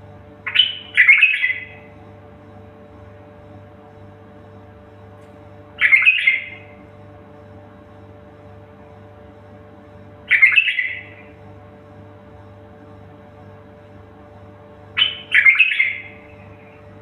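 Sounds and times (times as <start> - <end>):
steady low hum: 0.0 - 17.0
songbird calls: 0.4 - 1.9, 5.8 - 6.8, 10.3 - 11.4, 15.0 - 16.9.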